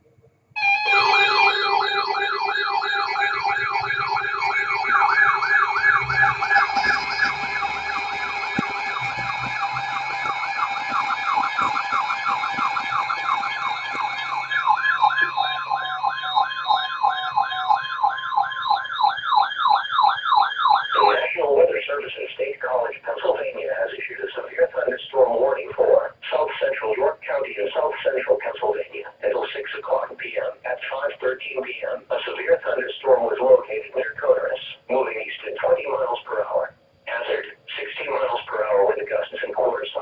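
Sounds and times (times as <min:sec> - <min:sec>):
electronic siren yelping: 0:00.6 - 0:21.8.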